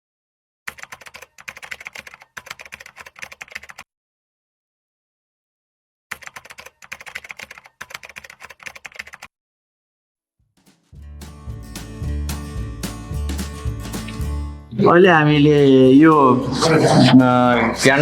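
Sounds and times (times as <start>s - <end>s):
computer keyboard typing: 0.7s - 3.8s, 6.1s - 9.3s.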